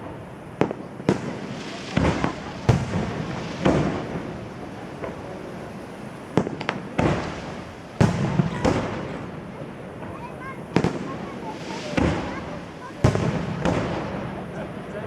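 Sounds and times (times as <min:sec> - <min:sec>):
fireworks bursting with bangs: 0:00.0 - 0:15.0.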